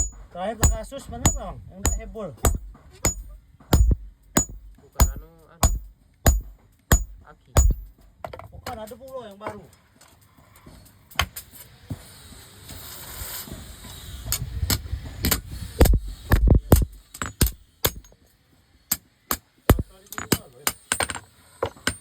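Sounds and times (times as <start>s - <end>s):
metallic clinks on machete blade: 0.0s - 7.8s
heavy thumps: 0.0s - 7.9s, 19.7s - 19.9s.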